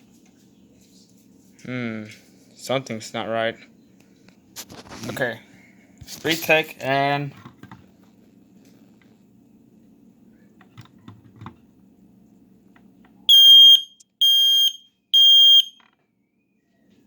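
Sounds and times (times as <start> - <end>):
low steady hum: 0.0 - 17.0
smoke alarm beeping: 13.3 - 15.9.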